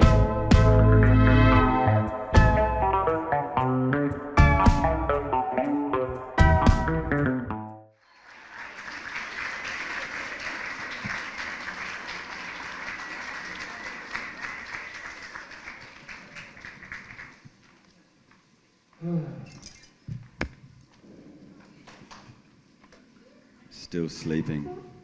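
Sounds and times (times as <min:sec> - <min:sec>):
audience applauding: 0:08.0 - 0:17.6.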